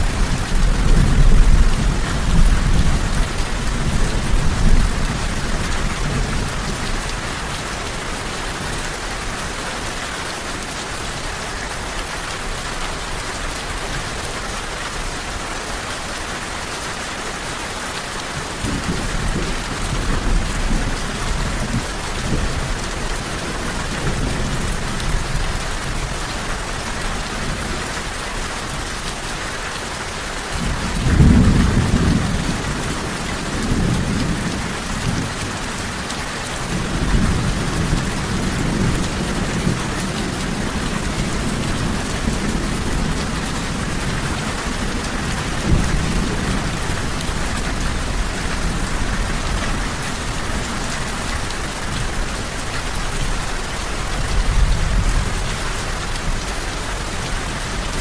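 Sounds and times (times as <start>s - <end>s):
low rolling thunder: 0.0s - 7.5s, 30.6s - 35.8s, 36.6s - 56.5s
steady rain falling: 0.0s - 58.0s.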